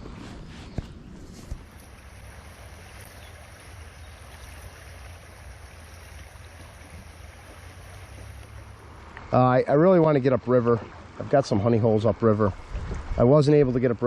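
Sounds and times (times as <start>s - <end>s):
wind rumble on microphone: 0.0s - 8.7s, 12.1s - 14.0s
fast-flowing river water rushing: 1.6s - 12.9s.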